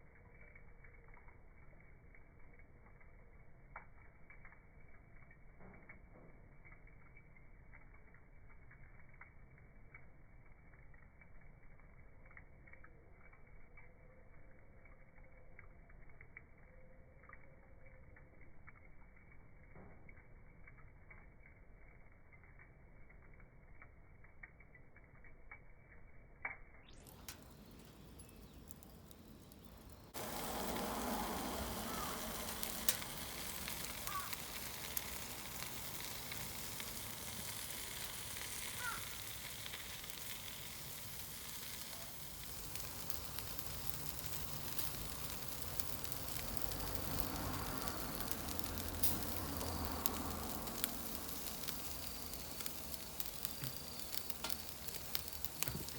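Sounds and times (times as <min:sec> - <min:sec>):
shrimp sizzling on a grill: 0:00.0 - 0:55.9
faint crackling: 0:27.0 - 0:55.9.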